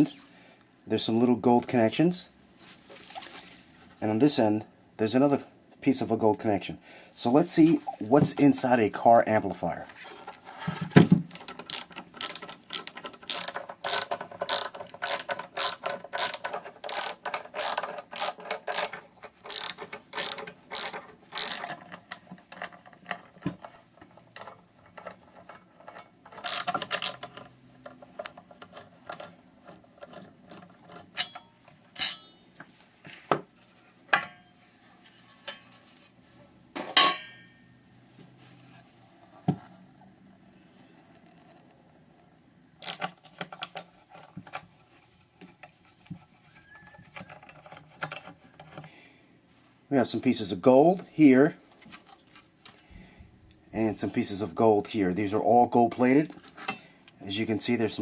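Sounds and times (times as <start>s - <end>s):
parts being handled knocks: 10.0s - 34.5s, 36.7s - 37.6s
hand ratchet clicking: 11.3s - 22.3s, 26.3s - 27.4s, 42.8s - 43.8s.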